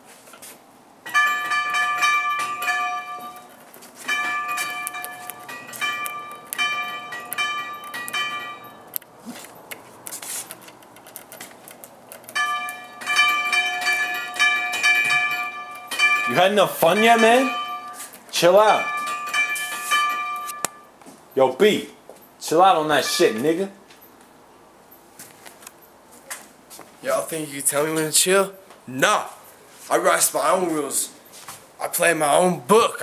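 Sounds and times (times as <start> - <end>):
doorbell chime melody: 1.1 - 3.5, 4.1 - 8.9, 12.4 - 18.1, 18.7 - 20.9.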